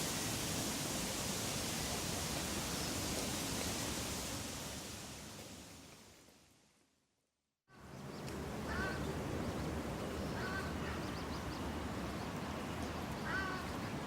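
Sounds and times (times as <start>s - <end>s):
steady background hum and hiss: 7.7s - 14.0s.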